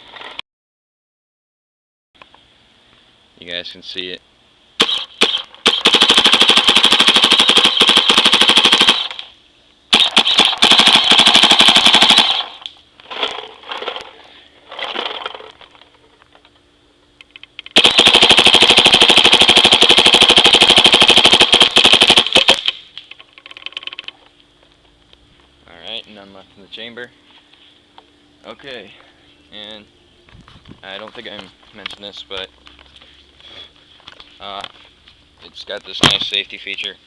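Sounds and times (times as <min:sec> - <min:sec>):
paintball marker rapid firing: 0:04.8 - 0:09.3, 0:09.9 - 0:12.6, 0:17.7 - 0:22.8.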